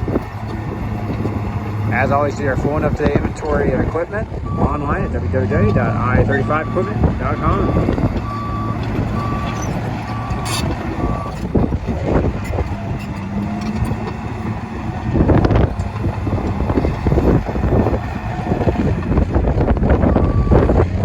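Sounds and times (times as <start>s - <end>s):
diesel engine under load: 0.0s - 21.0s
tracks clanking: 0.0s - 21.0s
reverse alarm beeping: 3.8s - 11.4s.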